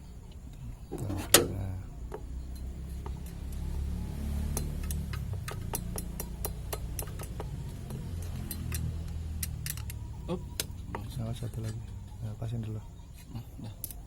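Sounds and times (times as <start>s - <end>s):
steady low hum: 0.0s - 14.0s
tools clicking on metal: 4.5s - 10.0s.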